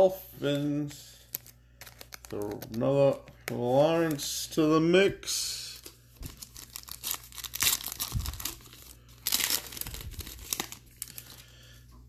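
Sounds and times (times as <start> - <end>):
card pack wrapper tearing and crinkling: 1.3 - 3.1, 5.7 - 11.4.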